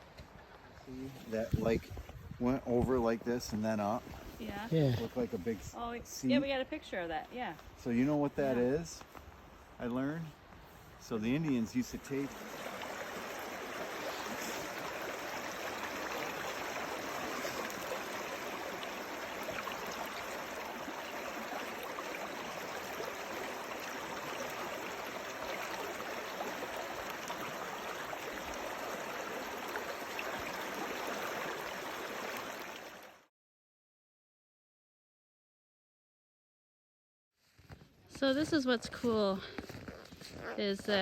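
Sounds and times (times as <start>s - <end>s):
river water rushing: 11.9s - 33.1s.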